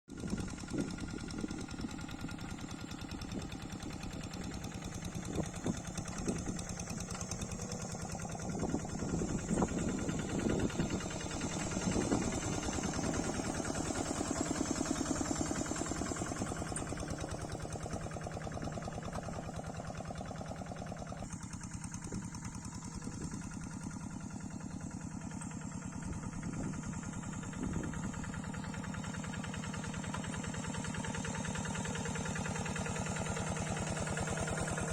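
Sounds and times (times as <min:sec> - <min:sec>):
diesel engine chugging: 0:00.1 - 0:34.9
engine knocks: 0:04.4 - 0:21.2.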